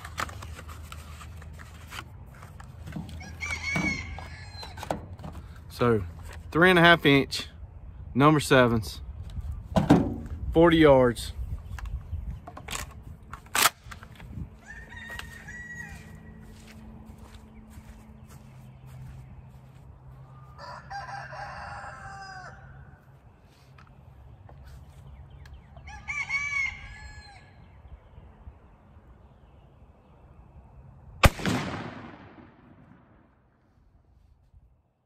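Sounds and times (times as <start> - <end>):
rooster crowing: 3.1 - 4.8, 14.6 - 16.5, 20.3 - 23.0, 25.8 - 27.6
shotgun shot: 31.2 - 33.3.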